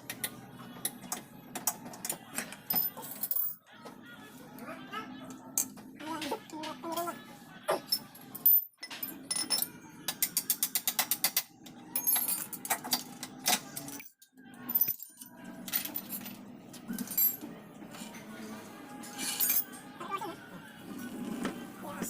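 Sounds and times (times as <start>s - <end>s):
metal tools clinking on engine parts: 10.4s - 16.4s.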